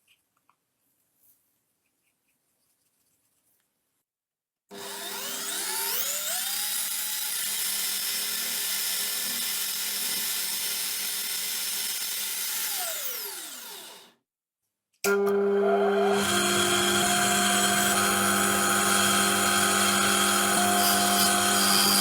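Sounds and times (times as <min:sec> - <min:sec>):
electric power tool whirring: 0:04.7 - 0:14.1, 0:15.1 - 0:22.0.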